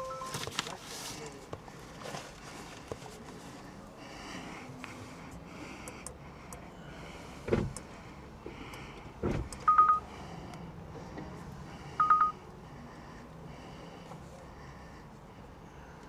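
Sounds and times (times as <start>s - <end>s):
short electronic beeps: 0.0s - 0.4s, 9.7s - 10.0s, 12.0s - 12.4s.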